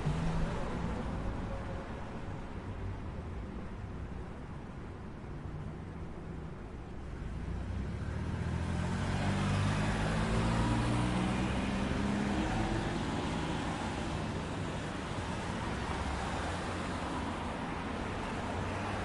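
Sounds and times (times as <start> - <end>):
steady traffic: 0.0 - 19.0
vehicle driving past: 7.7 - 12.8.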